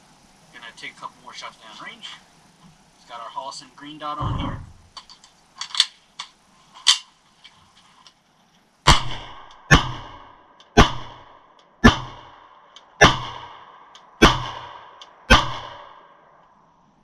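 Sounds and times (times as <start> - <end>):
pistol shots: 8.9 - 12.4, 13.0 - 13.6, 14.2 - 16.0.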